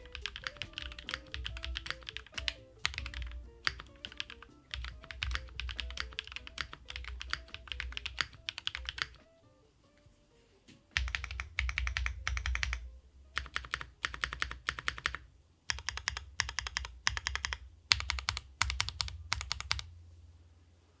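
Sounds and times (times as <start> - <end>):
mechanical keyboard typing: 0.0 - 9.2, 11.0 - 19.9
soft background music: 0.0 - 14.6.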